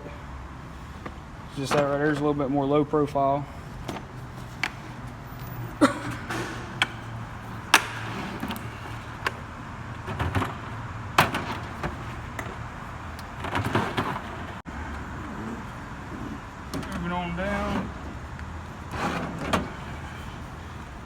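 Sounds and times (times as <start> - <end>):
tool cases being handled: 3.7 - 9.4.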